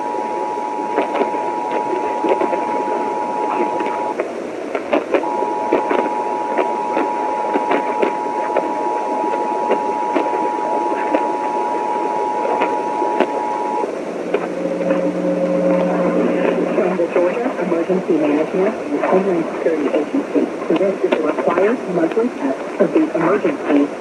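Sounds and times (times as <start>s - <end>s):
crackling radio static: 0.0s - 24.0s
lower steady tones: 0.0s - 24.0s
two-tone attention signal: 5.2s - 18.6s.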